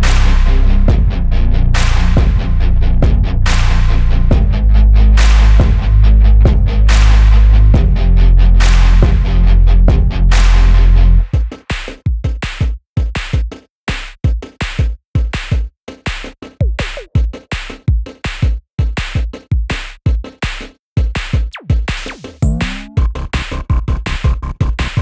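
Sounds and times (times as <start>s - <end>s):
electronic music with drum beat: 0.0s - 25.0s.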